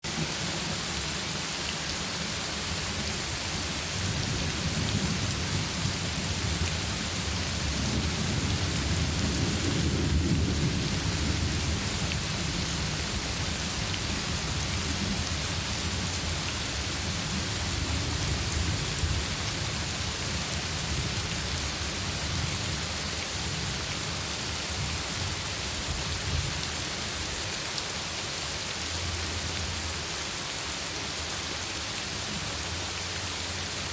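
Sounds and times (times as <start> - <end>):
heavy rain falling: 0.0 - 33.9
rolling thunder: 4.0 - 15.3.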